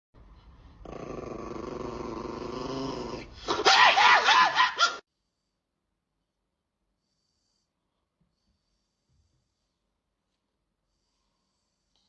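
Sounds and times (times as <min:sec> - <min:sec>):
animal growling: 0:00.8 - 0:03.5
animal yowling: 0:03.5 - 0:05.0.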